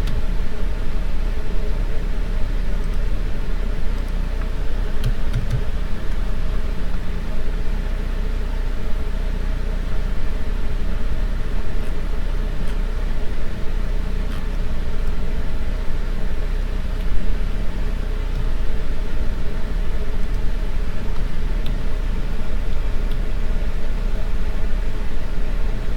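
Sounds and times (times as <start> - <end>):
low rumbling background noise: 0.0 - 25.9.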